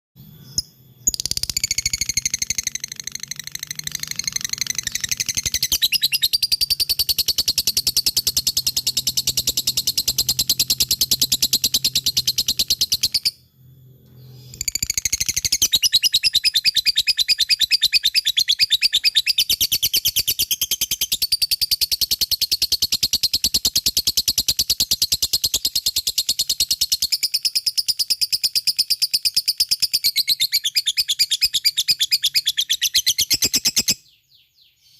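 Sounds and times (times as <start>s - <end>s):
bird rapid high chattering: 1.1s - 13.3s, 14.6s - 34.0s.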